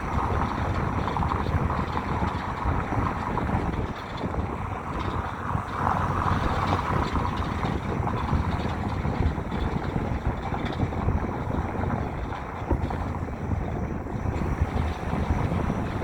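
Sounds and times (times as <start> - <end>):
road and tyre rumble: 0.0 - 16.0
wind noise on microphone: 0.0 - 16.0.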